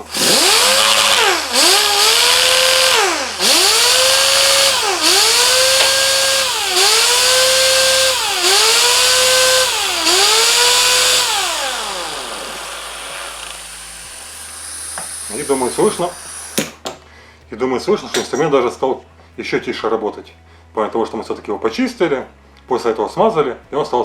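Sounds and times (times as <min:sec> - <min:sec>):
pneumatic sander whine: 0:00.0 - 0:16.8
exhaust air hiss: 0:00.0 - 0:17.4.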